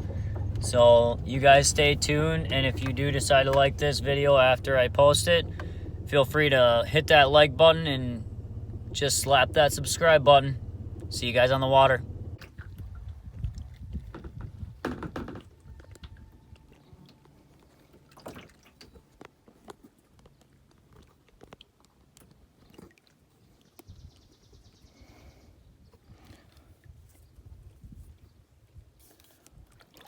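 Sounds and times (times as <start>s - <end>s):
small water splashes: 0.0s - 14.8s, 16.5s - 20.0s, 20.7s - 24.4s, 29.2s - 30.0s.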